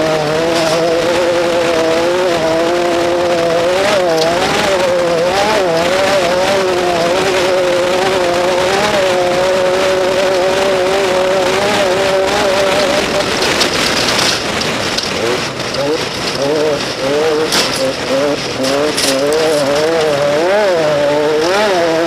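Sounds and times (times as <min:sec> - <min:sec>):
engine running at high revs: 0:00.0 - 0:22.0
scattered knocks: 0:10.3 - 0:20.2.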